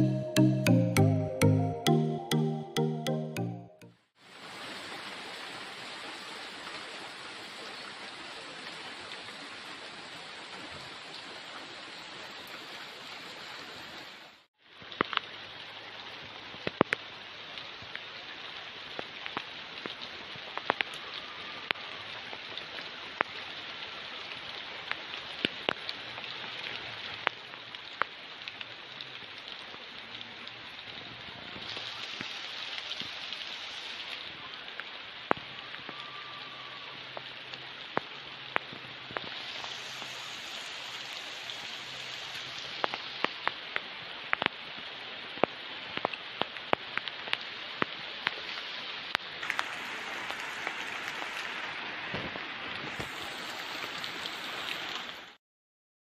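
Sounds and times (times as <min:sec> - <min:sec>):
rain hiss: 0:04.2 - 0:55.4
sharp raindrop hits: 0:49.4 - 0:54.9.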